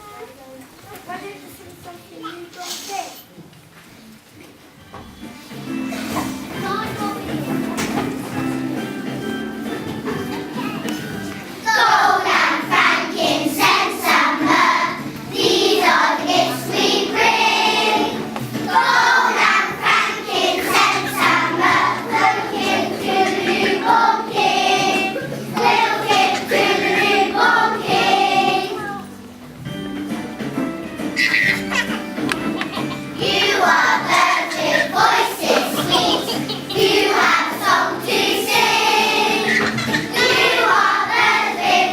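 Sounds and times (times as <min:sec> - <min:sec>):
singing with accompaniment: 0:11.5 - 0:29.0, 0:32.7 - 0:41.9.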